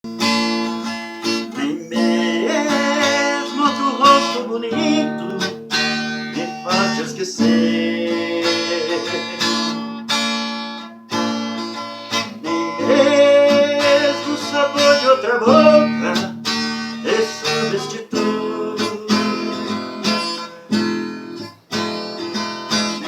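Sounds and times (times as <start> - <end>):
acoustic guitar strumming: 0.1 - 23.0
man singing: 1.5 - 9.7, 12.3 - 20.7.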